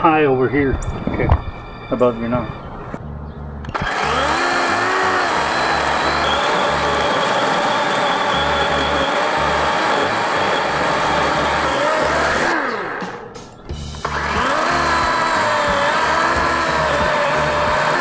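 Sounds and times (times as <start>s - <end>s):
battery chainsaw running: 3.7s - 13.3s, 14.0s - 18.0s.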